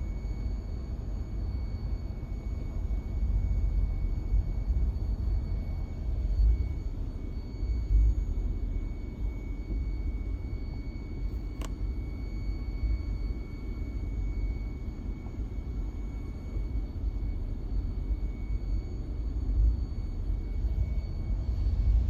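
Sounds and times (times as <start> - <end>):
engine running low rumble: 0.0 - 22.0
faint high whine: 0.0 - 22.0
sharp click: 11.4 - 11.8.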